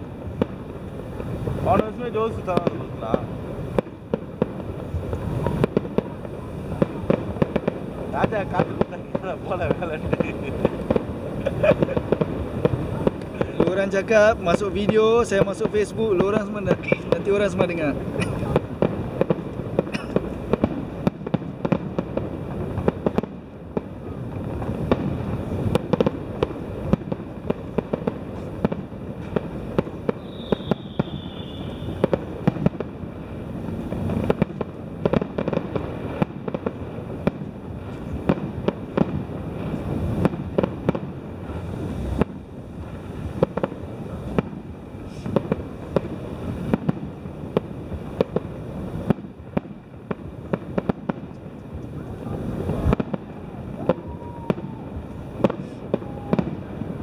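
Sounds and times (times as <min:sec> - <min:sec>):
fireworks bangs and crackles: 0:00.0 - 0:57.0
falling firework whistle: 0:28.4 - 0:32.8, 0:52.8 - 0:57.0
low rumble: 0:37.5 - 0:49.5.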